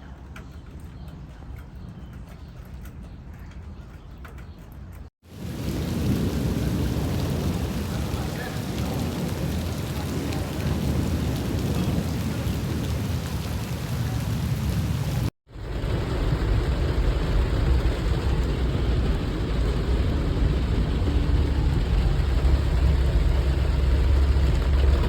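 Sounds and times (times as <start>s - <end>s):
heavy rain pouring: 5.2s - 25.0s
loud low rumble: 5.4s - 25.0s.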